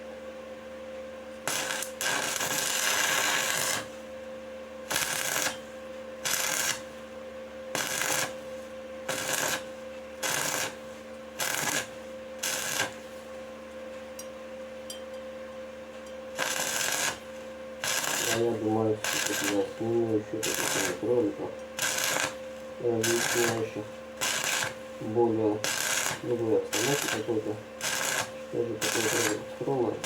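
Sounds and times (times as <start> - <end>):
welding arc crackling: 1.4 - 4.0, 4.9 - 7.0, 7.7 - 8.4, 9.1 - 10.8, 11.4 - 13.1, 16.3 - 30.0.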